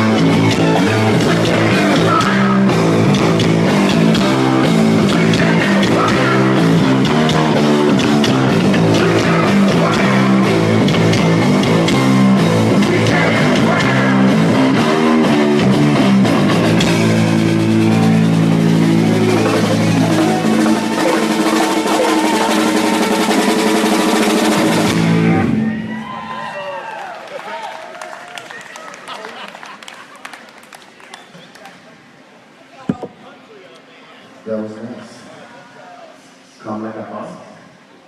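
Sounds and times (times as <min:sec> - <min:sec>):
bass guitar riffing: 0:00.0 - 0:25.7
drum kit: 0:00.0 - 0:25.7
electric guitar riffing: 0:00.0 - 0:25.7.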